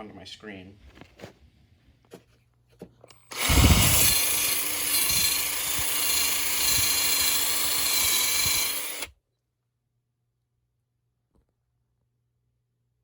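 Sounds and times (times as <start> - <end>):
electric power tool running: 3.2 - 9.1.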